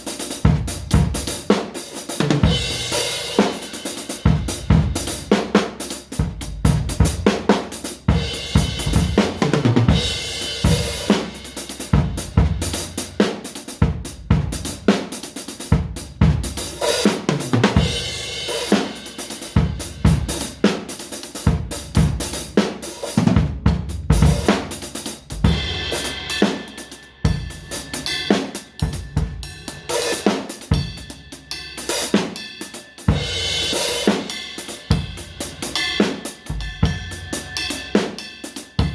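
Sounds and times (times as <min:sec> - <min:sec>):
drum kit improvisation: 0:00.0 - 0:38.9
ringing cymbals: 0:25.4 - 0:38.9.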